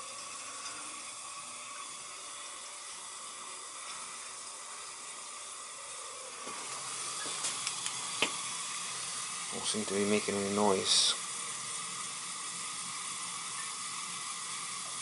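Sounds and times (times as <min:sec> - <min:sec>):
water hissing through heating pipes: 0:00.0 - 0:15.0.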